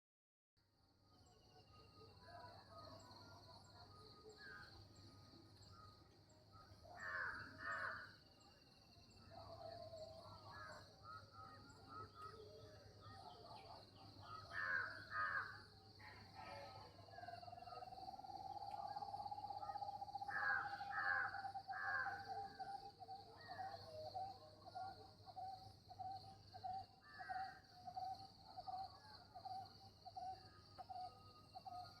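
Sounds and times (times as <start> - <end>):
crows cawing: 7.0 - 8.1, 14.5 - 15.6, 20.3 - 22.2.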